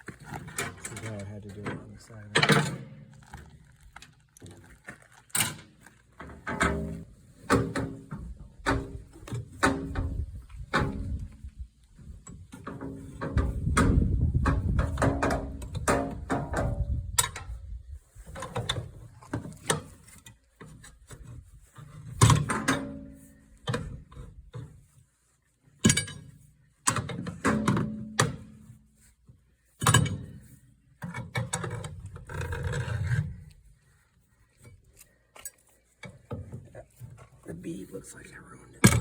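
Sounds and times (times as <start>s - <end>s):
tire iron clanking on rim: 6.2s - 11.4s, 12.3s - 17.6s, 29.8s - 33.5s.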